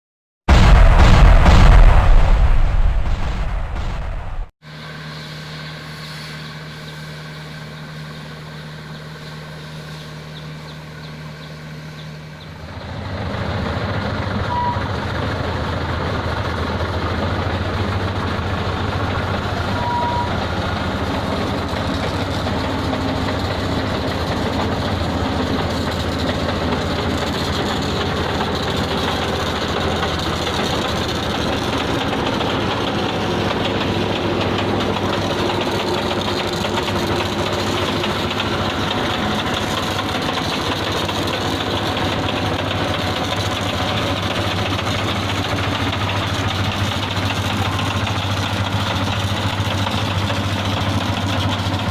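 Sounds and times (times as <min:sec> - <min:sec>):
diesel machinery engines running: 0:03.1 - 0:51.9
short beeps: 0:19.8 - 0:20.3.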